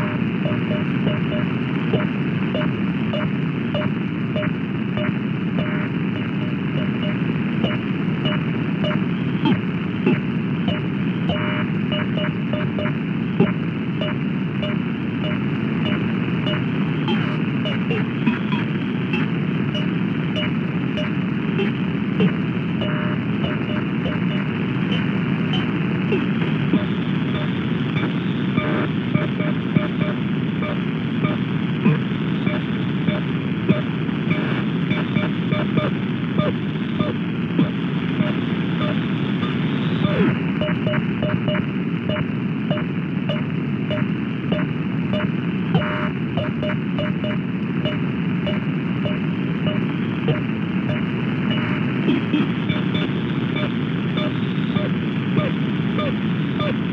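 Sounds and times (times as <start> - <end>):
radio static hiss: 0.0 - 56.9
syncopated clicks and beeps: 0.0 - 56.9.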